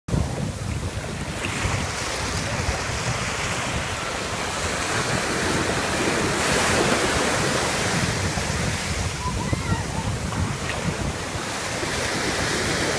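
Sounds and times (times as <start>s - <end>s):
ocean surf washing in: 0.1s - 12.9s
wind buffeting microphone: 0.1s - 12.9s.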